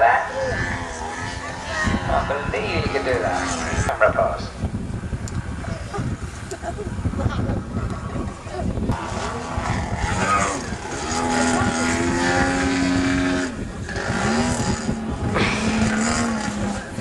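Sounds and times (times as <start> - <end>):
model plane engine running: 0.0 - 4.0, 8.9 - 17.0.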